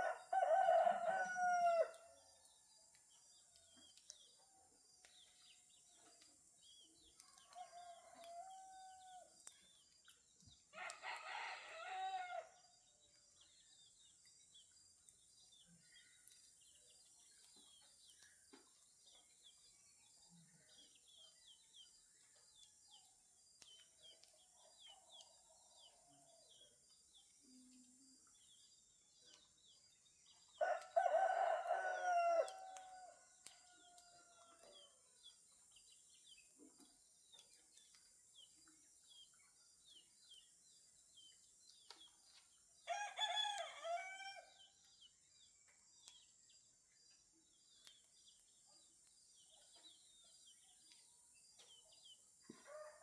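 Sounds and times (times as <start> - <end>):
rooster crowing: 0.0 - 2.0, 30.6 - 33.7, 42.9 - 44.6
small birds chirping: 0.0 - 8.4, 12.6 - 53.0.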